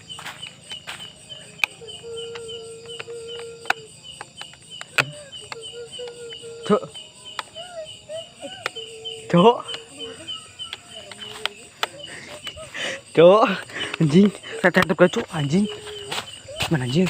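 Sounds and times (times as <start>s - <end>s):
crickets chirping: 0.0s - 17.0s.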